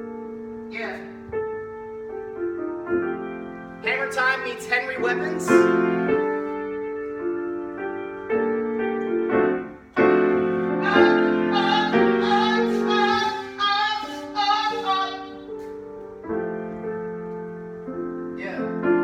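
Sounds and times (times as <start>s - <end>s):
piano playing chords: 0.0s - 19.0s
person singing long notes: 10.8s - 15.5s.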